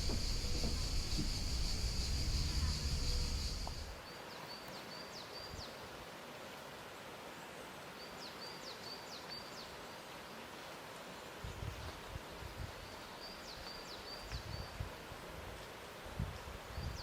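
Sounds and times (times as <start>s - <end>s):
low rumble: 0.0s - 3.9s
songbird singing: 0.0s - 5.7s
quiet outdoor ambience: 0.0s - 17.0s.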